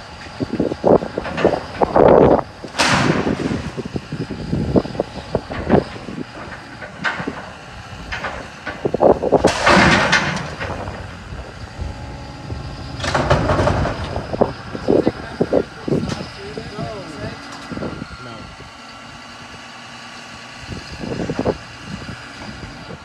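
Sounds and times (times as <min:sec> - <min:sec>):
building collapsing with crashes: 0:09.4 - 0:11.1
knocks and bangs: 0:09.4 - 0:11.3, 0:12.5 - 0:14.8.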